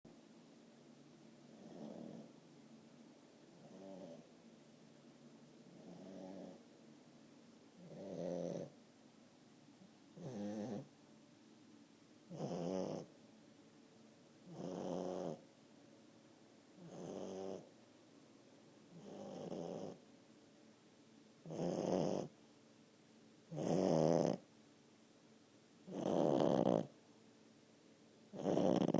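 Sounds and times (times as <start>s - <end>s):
dog snoring: 1.5s - 2.4s, 3.5s - 4.3s, 5.6s - 6.6s, 7.8s - 8.8s, 10.1s - 10.9s, 12.3s - 13.1s, 14.4s - 15.4s, 16.8s - 17.7s, 18.9s - 20.0s, 21.4s - 22.3s, 23.5s - 24.5s, 25.8s - 27.0s, 28.3s - 28.9s.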